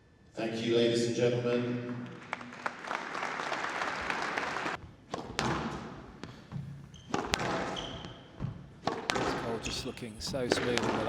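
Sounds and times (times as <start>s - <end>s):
audience applauding: 1.9s - 4.8s
squash ball knocks: 5.1s - 9.6s, 10.3s - 11.0s.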